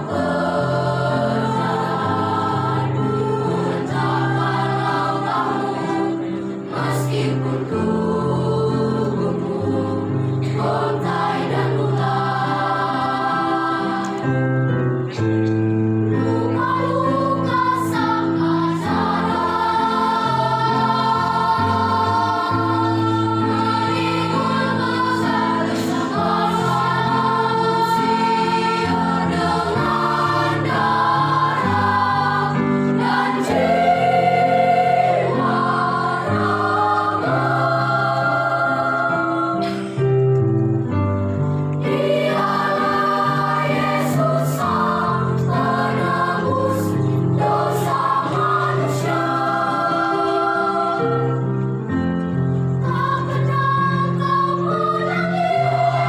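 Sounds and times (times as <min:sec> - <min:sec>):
choir singing a hymn: 0:00.0 - 0:56.0.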